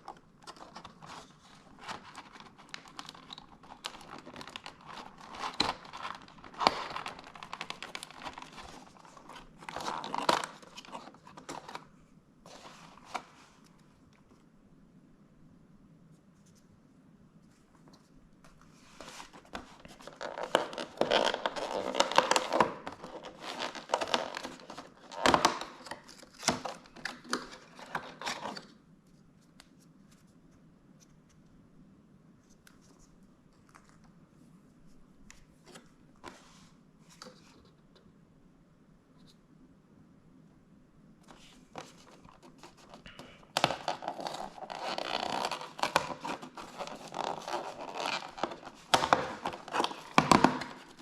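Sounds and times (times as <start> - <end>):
packaging tearing and rustling: 0.0 - 11.9, 19.0 - 28.7, 41.3 - 51.0.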